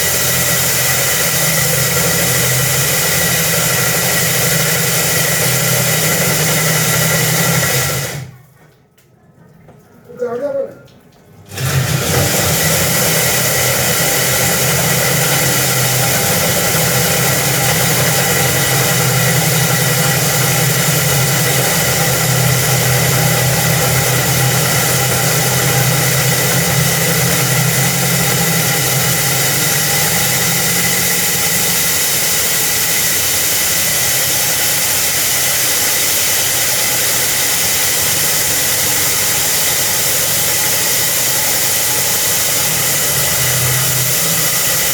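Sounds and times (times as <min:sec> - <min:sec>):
core cutting machine grinding concrete: 0:00.0 - 0:08.3, 0:11.5 - 0:44.9.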